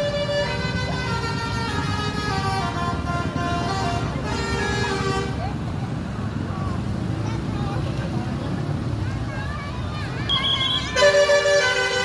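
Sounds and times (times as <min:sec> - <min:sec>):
musical air horn melody: 0:10.3 - 0:12.0.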